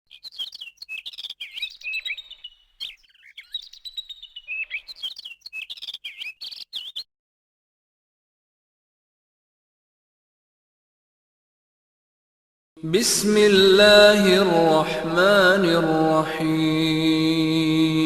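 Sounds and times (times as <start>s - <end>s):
birds chirping and twittering: 0.0s - 7.1s.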